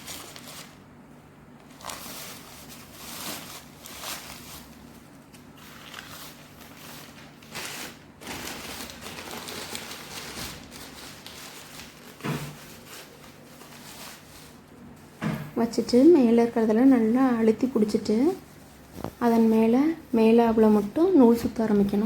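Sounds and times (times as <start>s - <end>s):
newspaper crinkling: 0.0s - 0.9s, 1.6s - 15.2s
small crackles: 1.6s - 14.6s
coir rustling: 1.7s - 15.2s.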